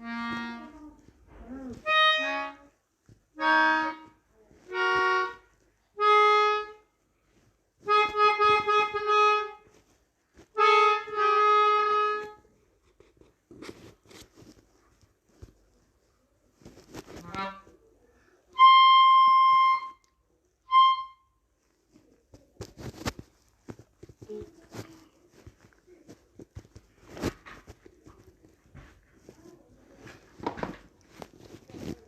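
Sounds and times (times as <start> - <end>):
melodica held notes: 0.0 - 0.7, 1.8 - 2.6, 3.4 - 5.4, 6.0 - 6.8, 7.8 - 9.6, 10.6 - 12.4, 18.6 - 20.0, 20.7 - 21.2.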